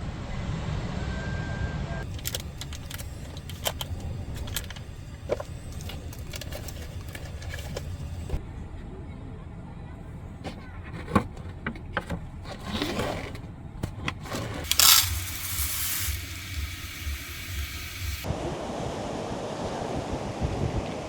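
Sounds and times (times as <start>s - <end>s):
wind buffeting microphone: 18.3s - 21.0s.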